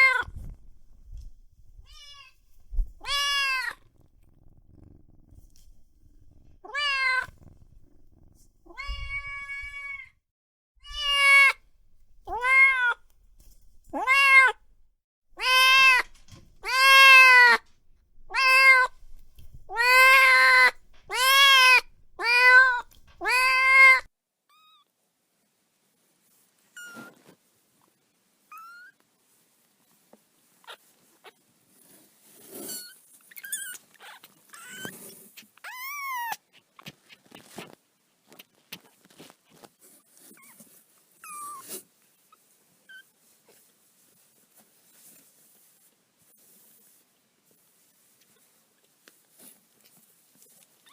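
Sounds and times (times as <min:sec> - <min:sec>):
kitten meowing: 0:00.0 - 0:01.0, 0:01.7 - 0:03.8, 0:05.5 - 0:10.1, 0:10.8 - 0:14.8, 0:15.4 - 0:24.1
faint scattered sounds: 0:10.8 - 0:24.1.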